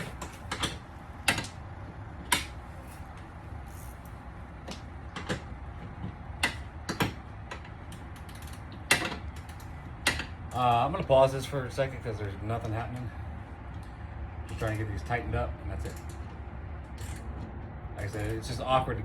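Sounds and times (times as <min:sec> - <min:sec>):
wrench metal clicks: 0:15.8 - 0:17.4.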